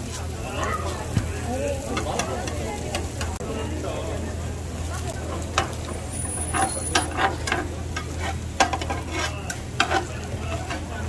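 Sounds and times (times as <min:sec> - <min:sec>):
food frying on griddle: 0:00.0 - 0:11.0
utensil scraping metal griddle: 0:04.8 - 0:11.0.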